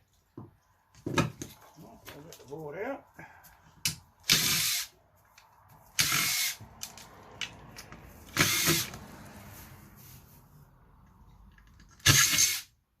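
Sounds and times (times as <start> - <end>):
power drill spinning out screws: 4.2 - 4.9, 5.9 - 6.6, 8.2 - 9.0, 12.0 - 12.7.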